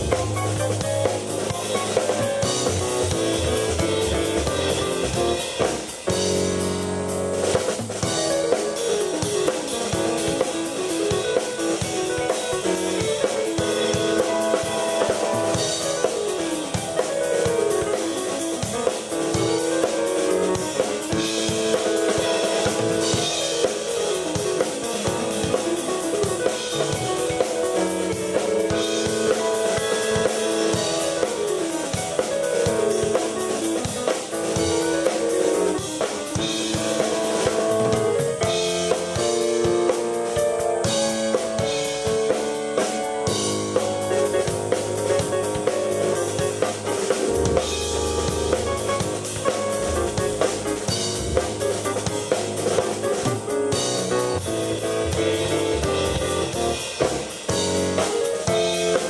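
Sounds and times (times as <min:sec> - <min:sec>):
keyboard riff: 0:00.0 - 0:06.9, 0:43.7 - 0:58.6
drum beat: 0:00.0 - 0:59.0.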